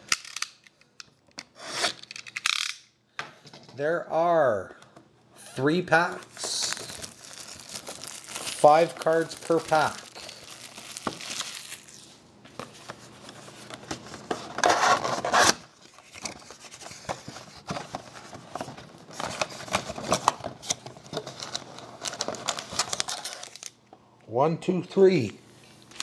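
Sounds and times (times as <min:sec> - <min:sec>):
foil packs rustling and crinkling: 0:06.1 - 0:12.2, 0:15.9 - 0:23.7.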